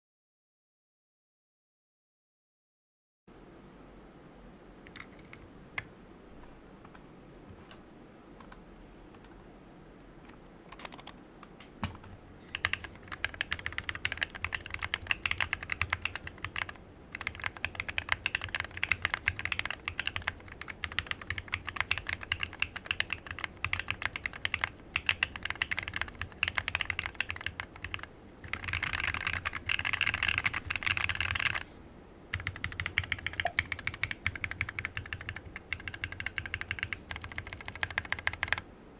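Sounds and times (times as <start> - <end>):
typing on mechanical keyboard: 4.9 - 5.9, 10.7 - 11.2, 11.8 - 31.7, 32.3 - 38.6.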